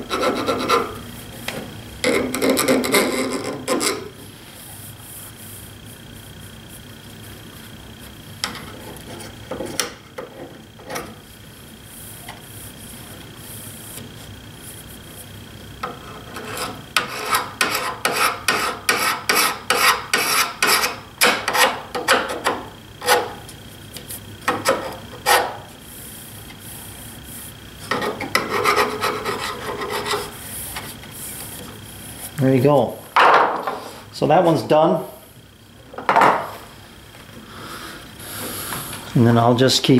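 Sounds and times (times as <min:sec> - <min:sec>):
hand tool scraping steel bar: 0:00.0 - 0:01.0, 0:02.0 - 0:04.0, 0:15.8 - 0:23.4, 0:24.6 - 0:25.6, 0:27.9 - 0:30.3.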